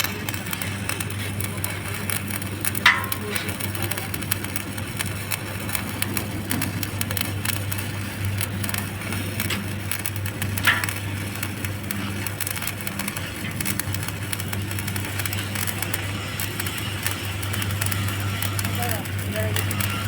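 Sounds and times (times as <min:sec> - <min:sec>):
welding arc crackling: 0:00.0 - 0:20.0
low steady hum: 0:02.4 - 0:12.4.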